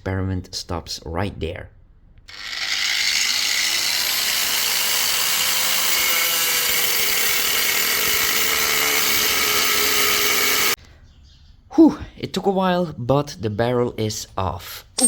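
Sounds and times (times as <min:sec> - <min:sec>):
cutting disc grinding metal: 0:02.3 - 0:10.8.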